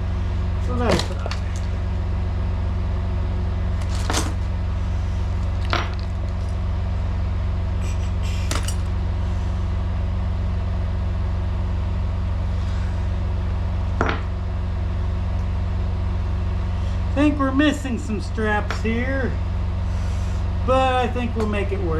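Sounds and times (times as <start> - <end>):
diesel engine idling: 0.0 - 21.9
sharp clicks of parts handled: 8.4 - 8.9.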